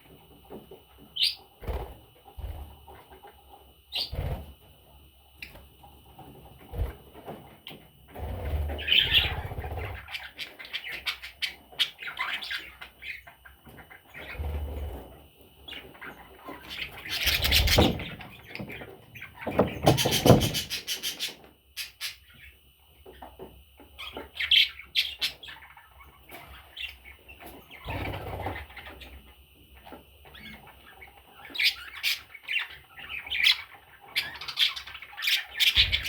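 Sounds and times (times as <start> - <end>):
budgerigar chirping and squawking: 8.8 - 14.5, 15.7 - 22.5, 30.3 - 36.0
rustling and knocking: 17.5 - 20.9.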